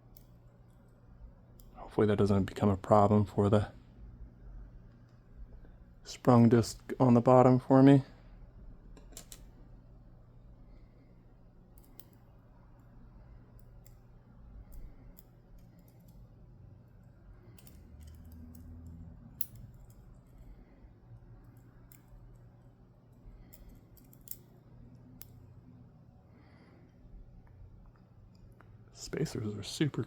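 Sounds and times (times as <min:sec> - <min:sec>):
small clicks of lock parts: 0:00.1 - 0:01.0, 0:01.6 - 0:01.8, 0:08.9 - 0:09.5, 0:11.7 - 0:12.9, 0:13.5 - 0:16.3, 0:17.5 - 0:20.6, 0:21.4 - 0:22.5, 0:23.1 - 0:25.4.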